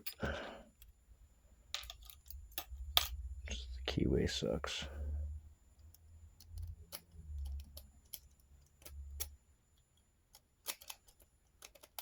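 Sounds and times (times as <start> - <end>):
lock pick clicking in padlock: 10.3 - 12.0.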